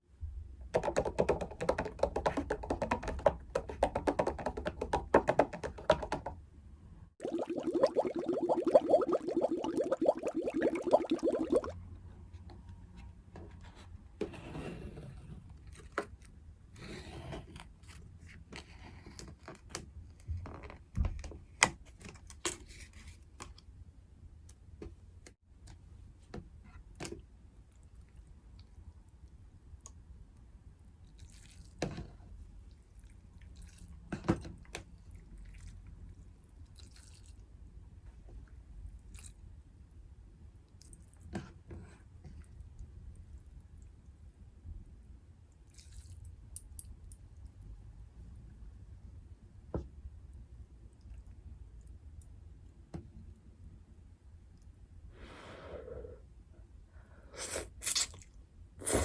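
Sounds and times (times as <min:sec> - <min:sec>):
soft wet squishes: 0:31.0 - 0:31.8, 0:32.6 - 0:34.0, 0:35.0 - 0:37.7, 0:38.5 - 0:39.5, 0:45.6 - 0:47.6.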